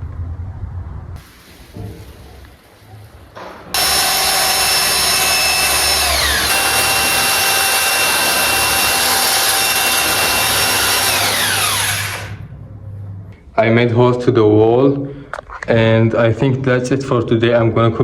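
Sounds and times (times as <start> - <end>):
power drill boring into wall: 3.7 - 12.5.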